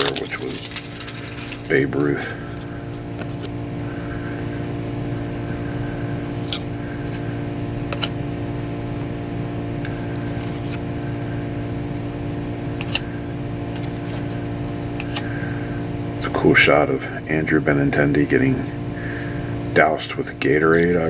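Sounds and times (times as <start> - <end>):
cards being flipped by hand: 0.0 - 3.6, 6.3 - 9.2, 9.8 - 10.9, 12.7 - 15.4
low background hum: 0.0 - 21.0
cards sliding snaps: 6.4 - 7.3, 7.9 - 8.2, 12.8 - 13.1, 13.7 - 15.4.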